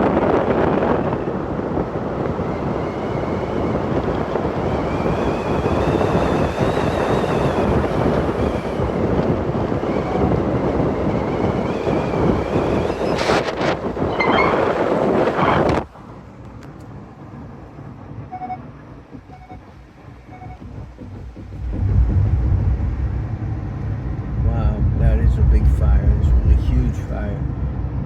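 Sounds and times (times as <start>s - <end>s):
moving vehicle: 0.0s - 28.0s
wind rushing: 0.0s - 28.0s
faint wavering whine: 2.4s - 13.4s.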